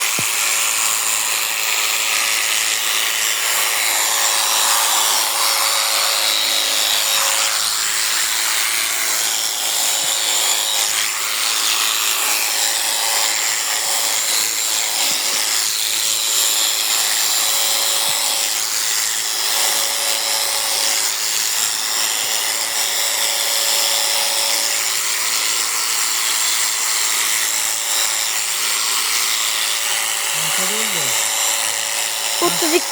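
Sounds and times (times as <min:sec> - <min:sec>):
electric sheep shears buzzing: 0:00.0 - 0:32.9.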